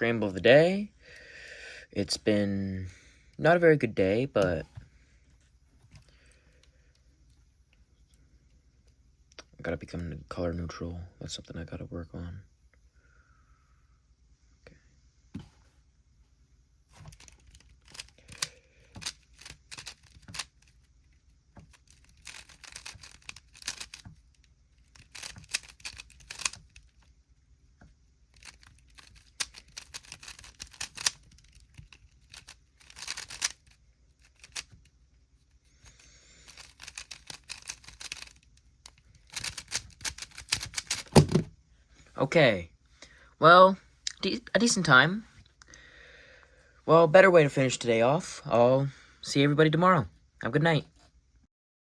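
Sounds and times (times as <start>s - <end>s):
plastic cube clicking turns: 17.0s - 27.1s, 28.3s - 34.9s, 35.8s - 41.5s.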